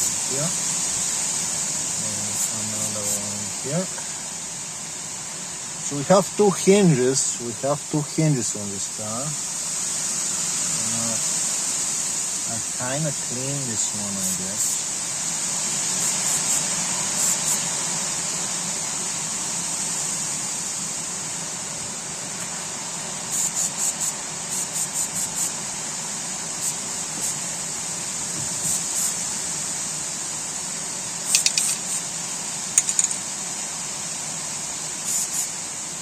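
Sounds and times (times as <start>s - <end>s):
wind hiss: 0.0s - 36.0s
aerosol spray puffs: 23.3s - 25.6s, 26.6s - 27.6s, 28.2s - 29.4s, 31.1s - 33.3s, 35.0s - 35.6s.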